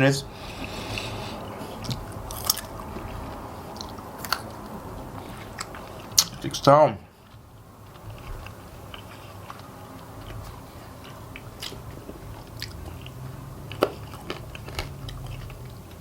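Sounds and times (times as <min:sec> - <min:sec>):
bones cracking: 0:01.8 - 0:02.8, 0:03.8 - 0:04.6
chewing chicken bones: 0:01.8 - 0:06.5, 0:07.3 - 0:16.0.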